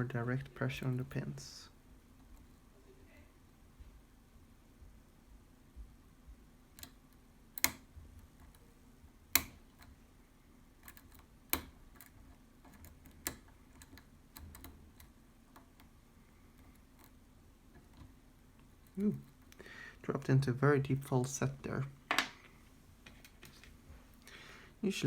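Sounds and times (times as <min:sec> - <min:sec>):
sharp lock clicks: 0:07.6 - 0:07.9
lock pick ticking on pins: 0:07.6 - 0:08.6.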